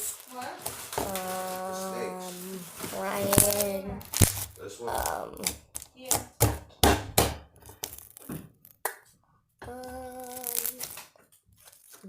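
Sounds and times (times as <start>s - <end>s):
slime squelching and crackling: 0.0s - 6.4s, 7.6s - 8.8s, 9.6s - 12.0s
child humming: 1.0s - 4.0s, 4.8s - 5.5s, 9.6s - 11.0s.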